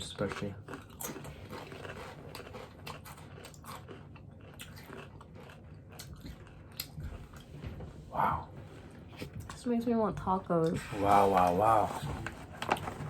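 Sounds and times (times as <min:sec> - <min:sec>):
person chewing crunchy snack: 0:00.0 - 0:07.5.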